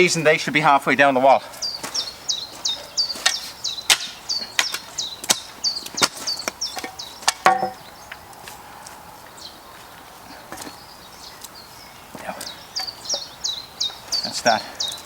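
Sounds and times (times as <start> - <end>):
small bird chirping: 1.5 - 8.2, 10.4 - 15.0.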